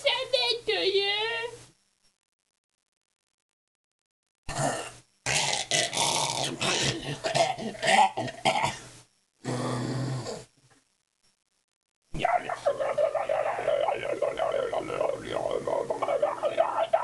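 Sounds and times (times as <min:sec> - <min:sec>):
person making throaty vocal noises: 0:04.5 - 0:08.6, 0:09.4 - 0:10.5, 0:12.2 - 0:17.0.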